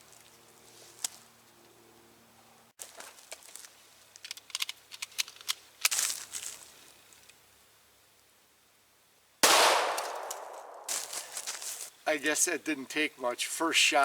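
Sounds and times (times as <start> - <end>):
handling clicks and rustles: 2.8 - 7.4
pistol shot with echo: 9.4 - 10.9.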